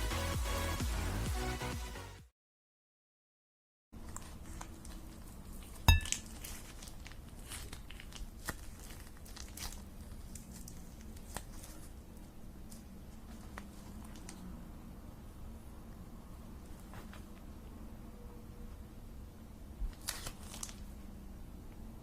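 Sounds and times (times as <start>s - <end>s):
crinkling handling noises: 4.0s - 14.6s, 16.5s - 17.7s, 19.8s - 21.9s.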